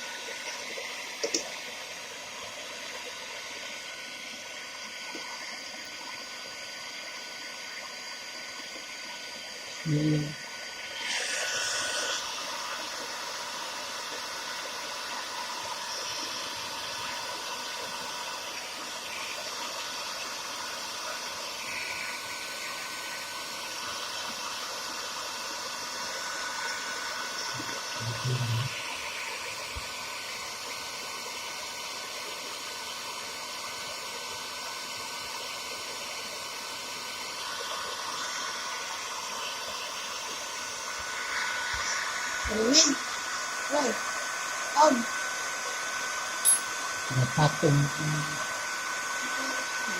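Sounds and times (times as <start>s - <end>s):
hair dryer blowing with whine: 0.0s - 49.9s.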